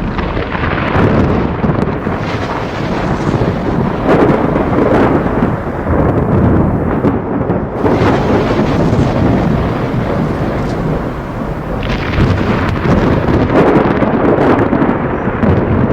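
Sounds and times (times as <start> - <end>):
thunder rumbling: 2.0 - 7.1, 7.8 - 13.5.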